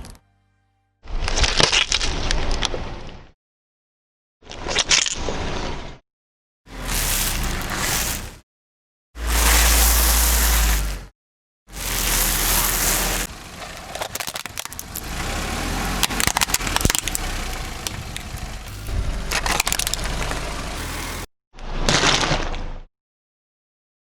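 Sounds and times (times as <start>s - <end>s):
car low rumble: 6.7s - 8.4s, 9.2s - 11.1s, 11.7s - 21.3s
tyre crushing brittle objects: 6.7s - 8.4s, 9.2s - 11.0s, 11.7s - 21.3s
loud rushing noise: 15.0s - 21.3s.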